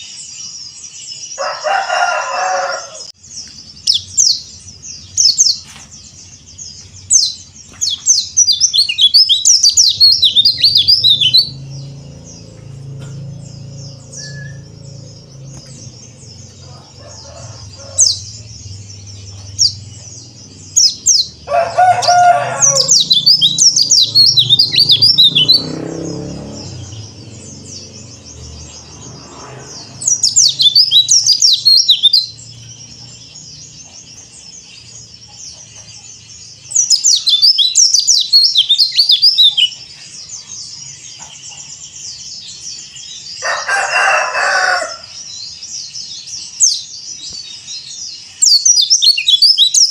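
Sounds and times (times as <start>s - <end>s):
birds chirping high and fast: 0.0s - 49.9s
birds twittering: 0.0s - 49.9s
chicken calling: 1.4s - 3.1s, 15.5s - 18.5s, 21.4s - 25.8s, 43.4s - 45.2s.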